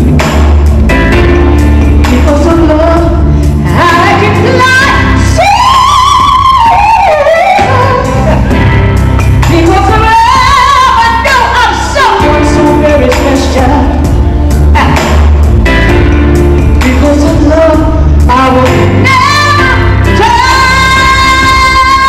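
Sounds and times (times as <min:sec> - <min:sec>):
backing track: 0:00.0 - 0:22.0
woman singing a ballad: 0:01.1 - 0:22.0.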